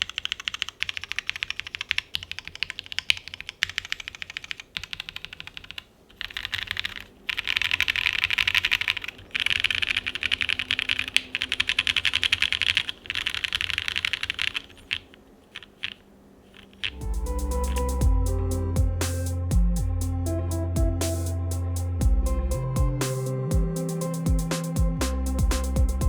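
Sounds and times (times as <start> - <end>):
fast typing on mechanical keyboard: 0.0 - 17.0.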